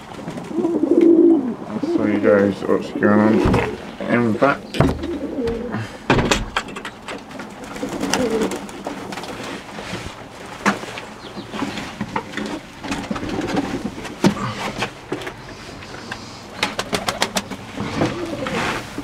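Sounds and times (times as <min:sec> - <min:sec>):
pigeons cooing: 0:00.0 - 0:06.1, 0:07.4 - 0:09.7, 0:11.1 - 0:19.0
sharp clicks and knocks: 0:04.7 - 0:07.5.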